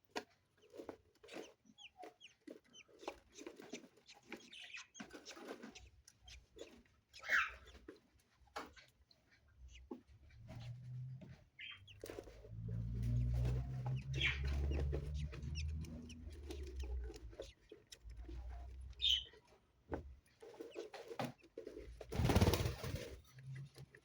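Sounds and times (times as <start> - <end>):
budgerigars chirping and chattering: 0.6 - 8.0, 11.6 - 19.5.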